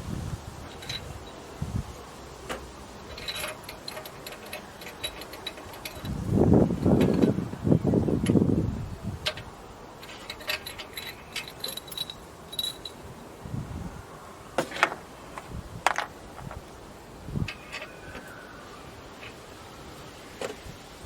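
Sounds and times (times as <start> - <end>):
small metal parts clinking: 0.6 - 1.5, 2.5 - 8.4, 9.2 - 13.0, 14.7 - 16.8, 17.4 - 18.4, 19.1 - 19.4
sharp clicks of metal tools: 2.5 - 6.2, 9.2 - 13.0.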